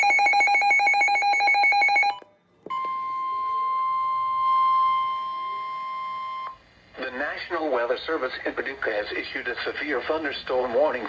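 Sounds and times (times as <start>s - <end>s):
steady alarm tone: 0.0s - 6.5s.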